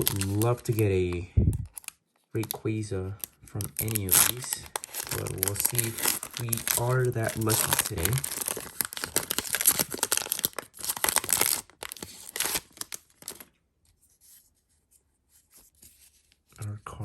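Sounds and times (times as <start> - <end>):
foil wrapper tearing and crinkling: 0.0 - 2.6, 3.2 - 13.5.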